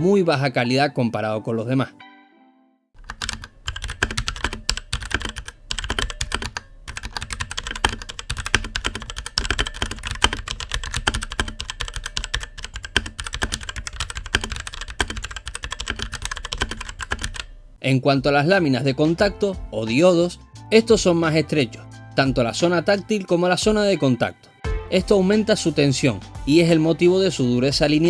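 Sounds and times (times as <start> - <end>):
mechanical keyboard typing: 3.0 - 17.5.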